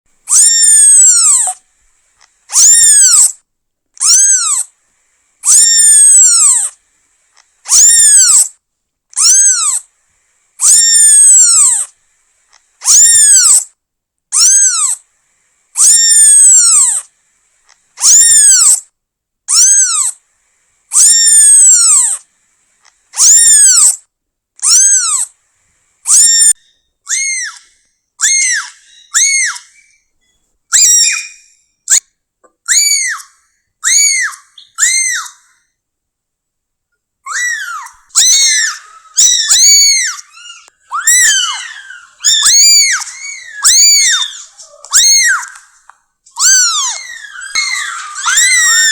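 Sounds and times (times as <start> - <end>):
kitten meowing: 0.3 - 1.6, 2.5 - 3.4, 4.0 - 4.7, 5.4 - 6.8, 7.7 - 8.5, 9.2 - 9.8, 10.6 - 11.9, 12.8 - 13.7, 14.3 - 15.0, 15.8 - 17.1, 18.0 - 18.8, 19.5 - 20.2, 23.2 - 24.0, 24.6 - 25.3, 26.1 - 29.8, 30.7 - 31.4, 32.7 - 35.4, 37.3 - 45.8, 46.4 - 48.9.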